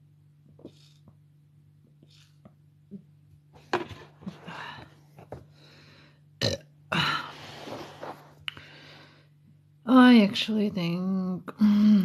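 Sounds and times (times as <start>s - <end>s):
person burping loudly: 6.4s - 7.2s.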